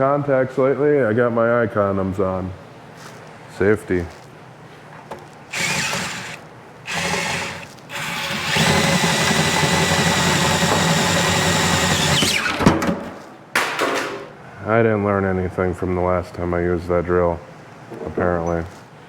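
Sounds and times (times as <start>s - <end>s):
drill boring through nut: 5.5s - 12.6s.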